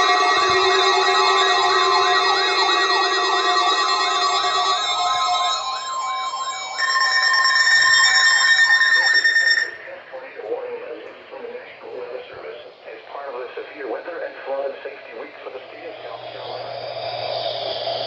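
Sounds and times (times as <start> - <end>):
warbling siren-like alarm tone: 0.0 - 10.4, 15.6 - 18.0
steady alert tones: 0.0 - 10.5.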